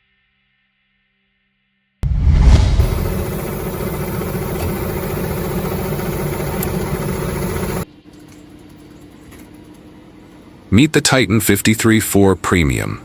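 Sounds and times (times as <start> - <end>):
faint hum: 2.0 - 8.2
machine engine humming: 2.1 - 7.8.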